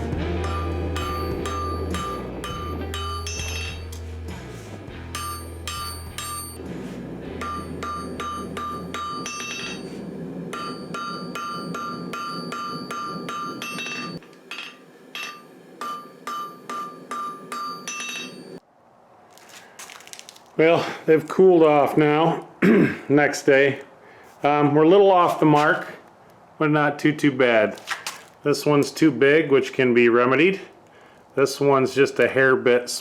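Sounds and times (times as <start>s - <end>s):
hammer ringing on anvil: 0.4s - 4.0s, 5.1s - 6.7s, 7.4s - 18.6s.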